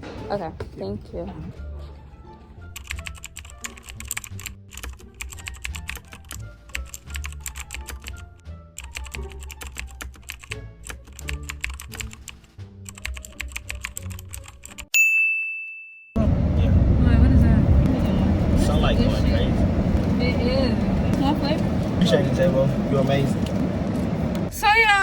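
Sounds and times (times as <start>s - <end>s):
keyboard typing: 2.8s - 14.9s.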